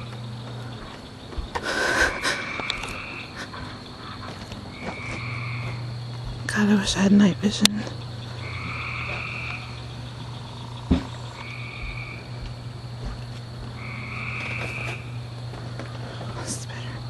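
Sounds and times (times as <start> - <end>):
high insect-like whine: 0.0 - 17.0
animal trilling calls: 1.5 - 6.0, 8.0 - 12.4, 13.8 - 15.3.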